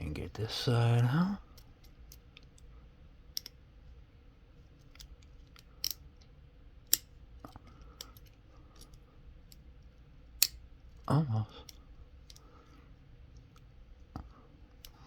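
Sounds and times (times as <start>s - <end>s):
metallic clicks in padlock: 5.0s - 6.1s, 6.8s - 7.1s, 10.4s - 10.6s.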